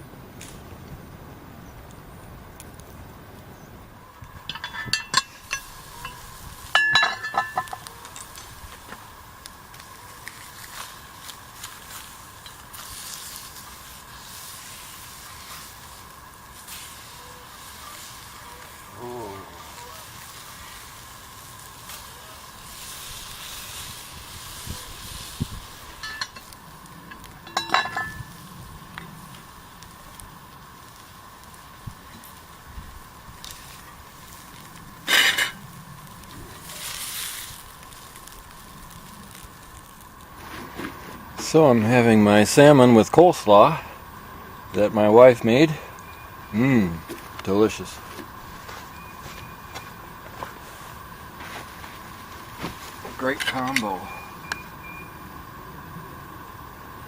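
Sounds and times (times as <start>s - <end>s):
fish sizzling in a skillet: 4.2s - 57.0s
metal cookware clinking: 4.5s - 7.9s, 26.0s - 26.5s, 27.4s - 28.3s.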